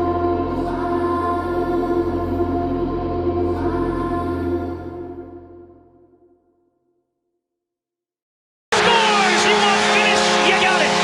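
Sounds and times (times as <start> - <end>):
goal horn chord: 8.7 - 11.0.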